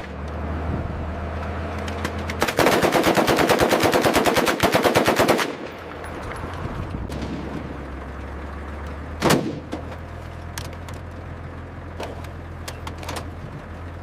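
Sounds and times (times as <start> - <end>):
machine gun firing burst: 2.4 - 5.6.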